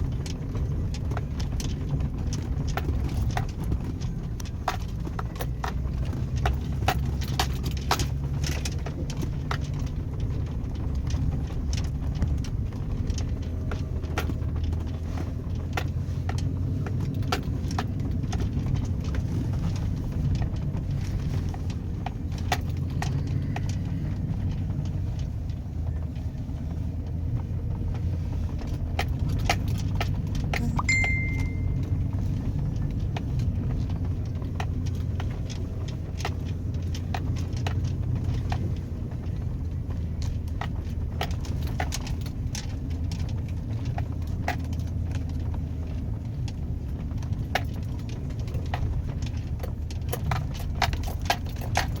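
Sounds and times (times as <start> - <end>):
clicks and rattles: 0.0 - 52.0
truck engine droning: 0.0 - 52.0
short high beep: 30.6 - 31.9.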